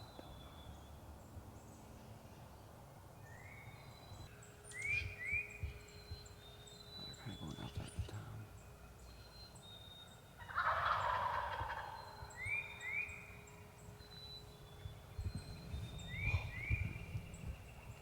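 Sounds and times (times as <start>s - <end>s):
bird chirps: 3.2s - 18.0s
turkey gobbling: 10.4s - 13.1s.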